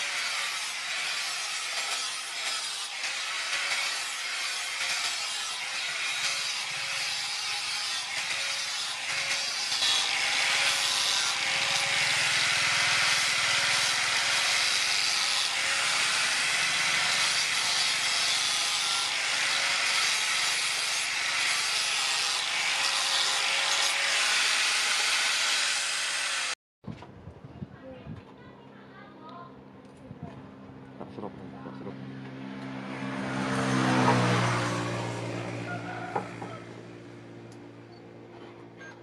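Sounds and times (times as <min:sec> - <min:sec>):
power tool grinding: 0:00.0 - 0:26.6.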